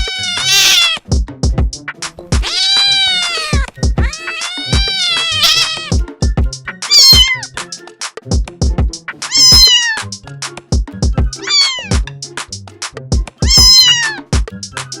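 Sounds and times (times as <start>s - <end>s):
cat meowing: 0.0s - 1.0s, 2.4s - 6.0s, 6.9s - 7.5s, 9.3s - 10.0s, 11.4s - 12.0s, 13.4s - 14.2s
music with steady beat: 0.0s - 15.0s.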